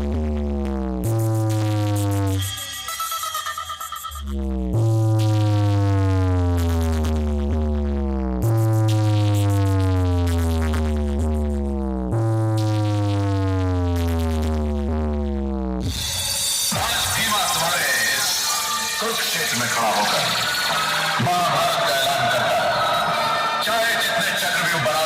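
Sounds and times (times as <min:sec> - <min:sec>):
deep bass notes gliding downward: 0:00.0 - 0:02.4, 0:04.3 - 0:16.0.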